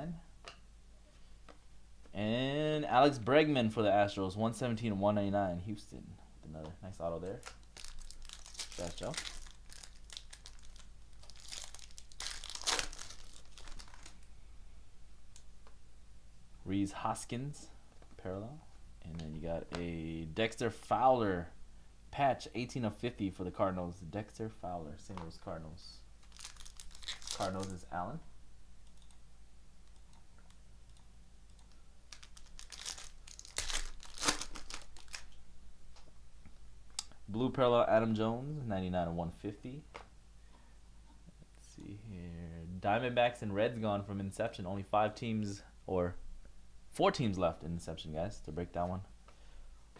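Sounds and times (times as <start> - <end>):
card pack wrapper crinkling: 7.2 - 14.3, 26.2 - 27.9, 32.1 - 35.4.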